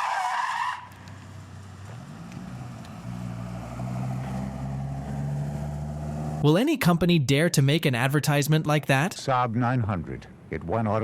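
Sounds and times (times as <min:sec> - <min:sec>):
tyres skidding: 0:00.0 - 0:06.5
car engine running: 0:00.9 - 0:06.4.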